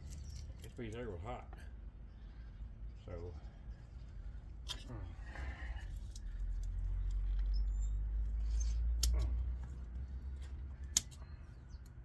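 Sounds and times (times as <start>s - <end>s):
light clicks: 9.0s - 12.0s.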